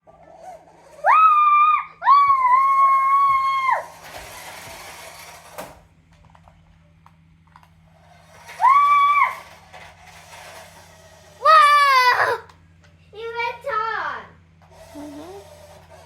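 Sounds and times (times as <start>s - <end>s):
child squealing: 1.0s - 3.9s, 8.6s - 9.4s, 11.4s - 12.5s.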